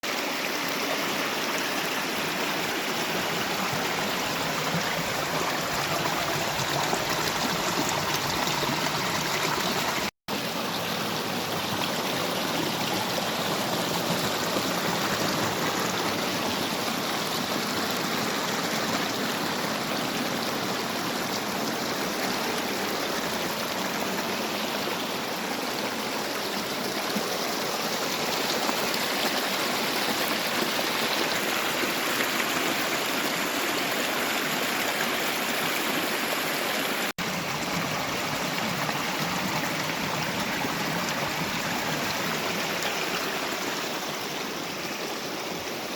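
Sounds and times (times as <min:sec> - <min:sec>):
stream flowing water: 0:00.0 - 0:45.9.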